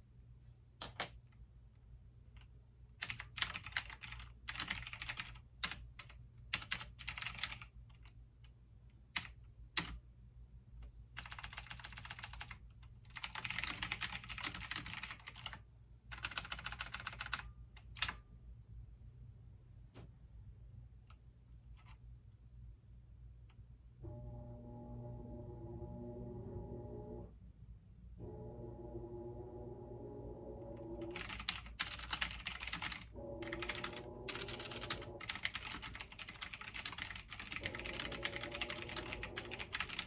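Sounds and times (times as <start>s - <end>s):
typing on computer keyboard: 3.0s - 8.1s, 9.2s - 10.0s, 11.2s - 18.2s, 31.1s - 40.0s
steady low hum: 22.4s - 40.0s.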